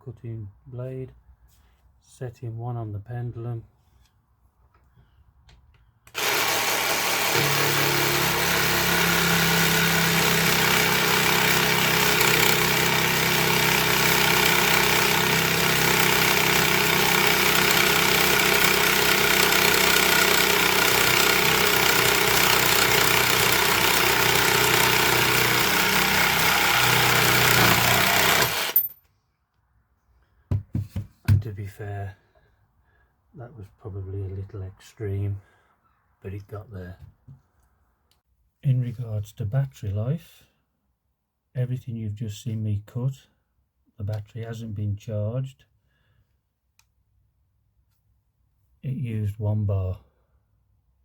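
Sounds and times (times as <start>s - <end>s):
jigsaw sawing through steel: 6.1s - 28.9s.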